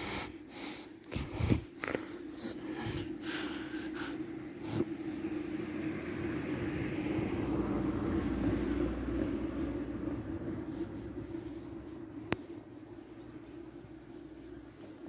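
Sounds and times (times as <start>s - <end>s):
steady low hum: 0.0s - 15.0s
passing vehicle: 3.9s - 15.0s.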